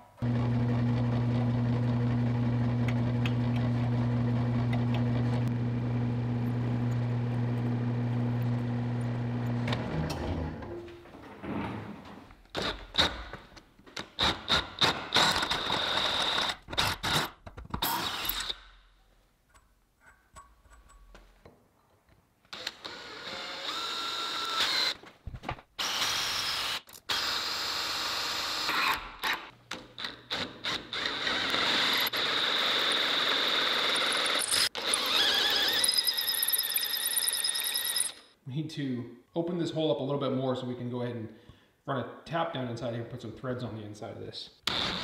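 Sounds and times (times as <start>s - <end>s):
power tool working metal: 30.8s - 36.4s.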